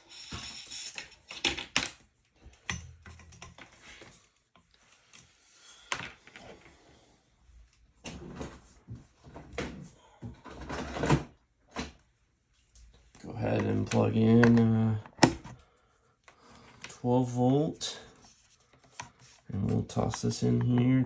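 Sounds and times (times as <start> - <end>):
plastic plugs clicking: 13.6 - 15.5.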